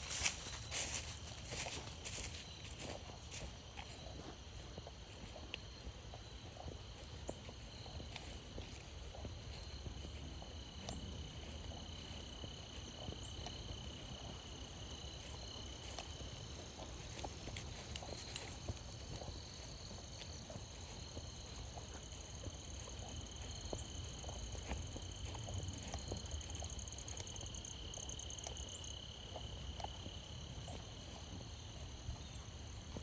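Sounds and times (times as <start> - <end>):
crickets chirping: 0.0 - 33.0
footsteps crunching on trail: 0.0 - 33.0.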